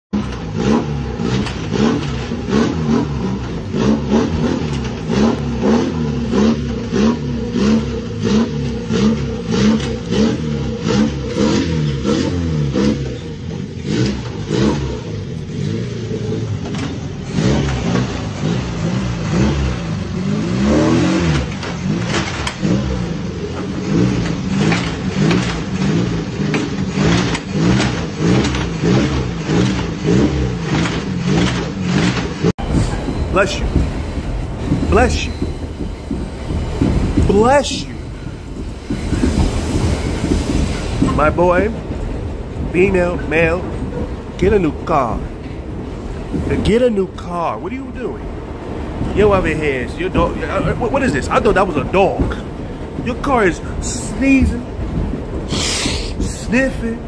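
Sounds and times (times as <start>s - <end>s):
car engine running: 0.1s - 57.0s
rough puffing sniff: 55.5s - 56.4s.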